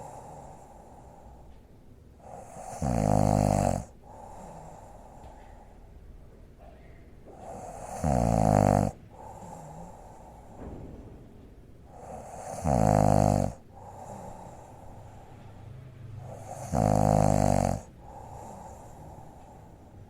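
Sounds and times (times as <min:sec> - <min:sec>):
quiet breathing: 0:00.0 - 0:20.0
woman snoring: 0:02.2 - 0:05.6, 0:07.3 - 0:10.6, 0:11.9 - 0:15.2, 0:16.2 - 0:19.9.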